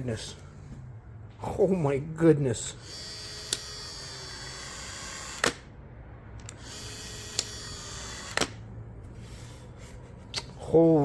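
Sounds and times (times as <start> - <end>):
caulking gun motor whirring: 2.8 - 5.6, 6.4 - 8.6.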